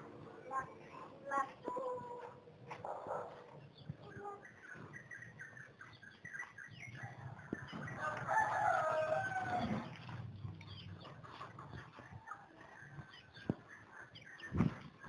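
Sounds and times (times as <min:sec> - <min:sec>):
chicken chirps and clucks: 0:02.8 - 0:15.0
rooster crowing: 0:08.0 - 0:09.8.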